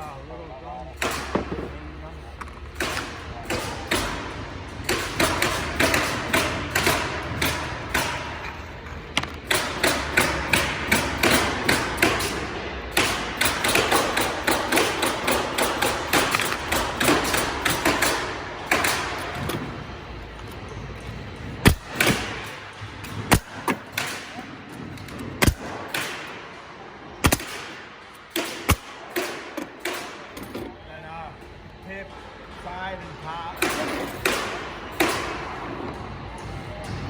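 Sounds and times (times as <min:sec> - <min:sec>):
hammer driving nails: 0:01.0 - 0:01.7, 0:02.7 - 0:19.8, 0:21.6 - 0:26.6, 0:27.2 - 0:30.7, 0:33.6 - 0:35.7.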